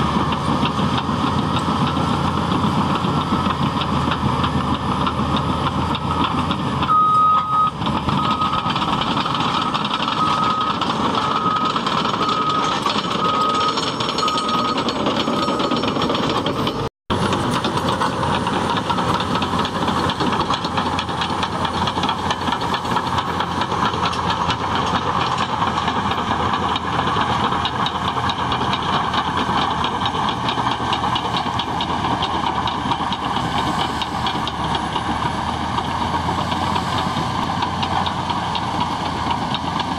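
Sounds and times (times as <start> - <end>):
bulldozer diesel engine running: 0.0 - 39.9
short high beeps: 6.9 - 8.6.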